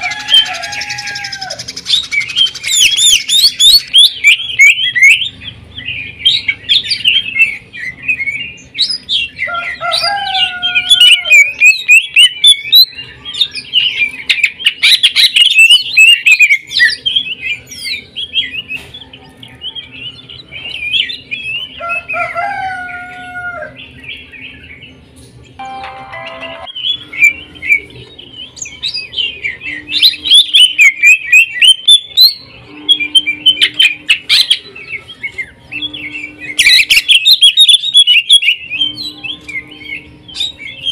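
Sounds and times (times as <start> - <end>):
bird chattering song: 0.0 - 40.9.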